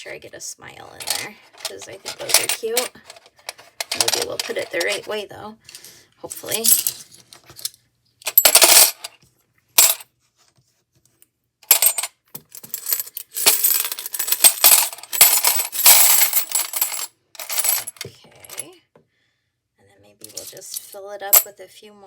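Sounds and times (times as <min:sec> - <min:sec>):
plastic discs clinking and clattering: 0:01.0 - 0:05.2.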